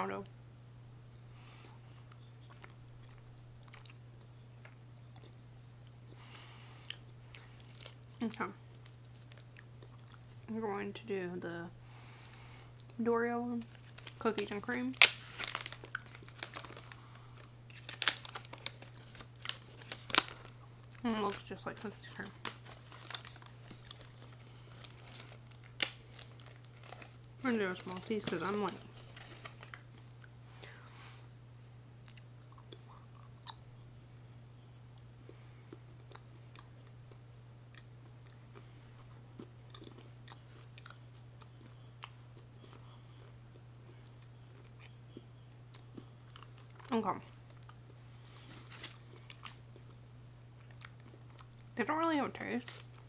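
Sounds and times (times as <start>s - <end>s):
steady low hum: 0.0s - 53.0s
candy wrapper crinkling: 6.9s - 10.4s, 13.6s - 30.1s, 47.5s - 50.0s, 52.5s - 53.0s.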